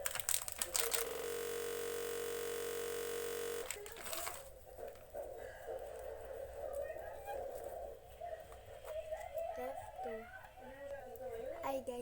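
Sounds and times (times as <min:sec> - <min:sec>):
electronic buzzing tone: 0:00.8 - 0:03.8.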